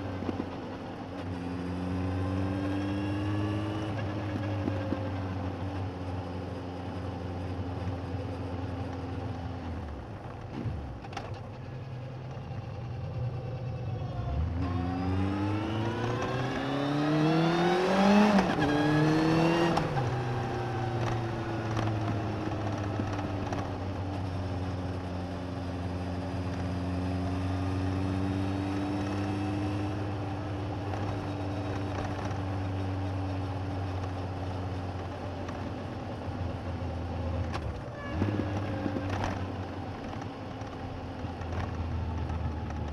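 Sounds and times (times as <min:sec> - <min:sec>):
motorcycle engine revving: 0:12.2 - 0:42.9.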